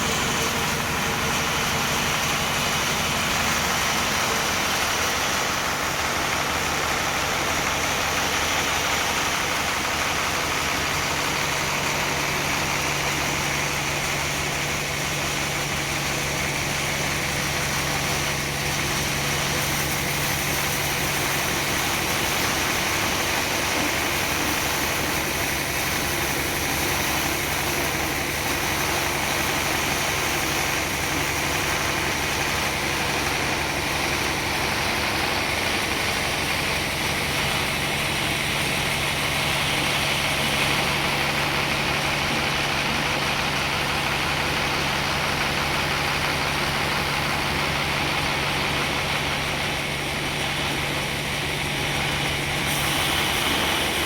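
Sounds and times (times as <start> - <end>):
sawmill machinery humming: 0.0 - 54.0
machinery hiss: 52.2 - 54.0.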